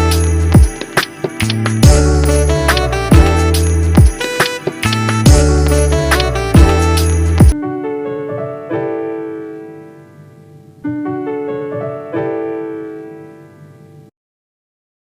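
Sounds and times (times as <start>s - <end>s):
solo piano sustained chords: 0.0s - 4.4s, 5.2s - 14.1s
instrumental track with heavy bass: 0.0s - 7.6s.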